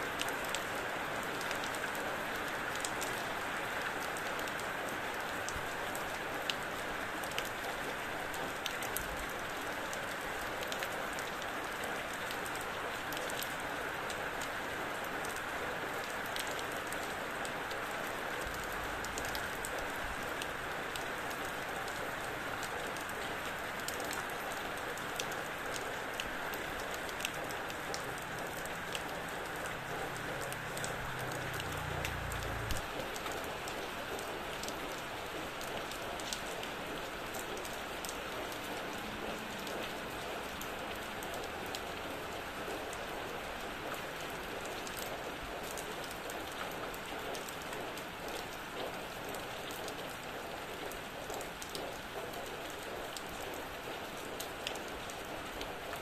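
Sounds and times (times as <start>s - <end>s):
steady rain falling: 0.0s - 56.0s
raindrop ticks: 16.0s - 56.0s.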